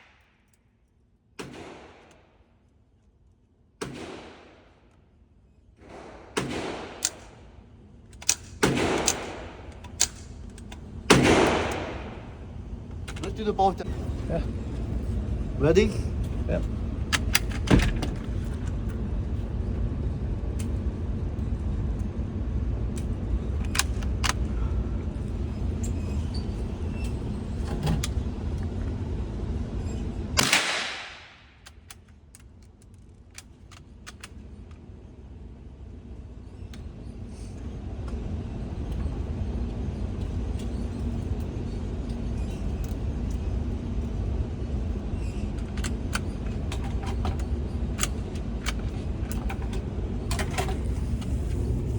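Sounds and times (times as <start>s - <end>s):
steady low rumble: 0.0s - 51.9s
rifle shot: 1.4s - 2.1s, 3.8s - 4.7s, 5.8s - 7.4s, 8.6s - 9.7s, 11.1s - 12.2s, 30.4s - 31.5s.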